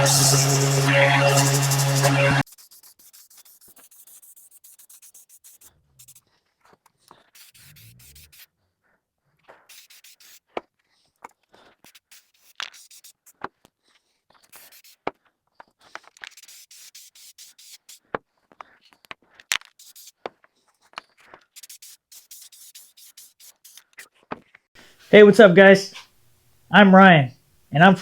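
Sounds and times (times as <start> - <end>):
sandpaper rubbing on wood: 0.0 - 6.2, 7.3 - 8.4, 9.7 - 10.4, 11.9 - 13.2, 14.5 - 15.0, 16.2 - 18.0, 19.8 - 20.1, 21.6 - 24.0.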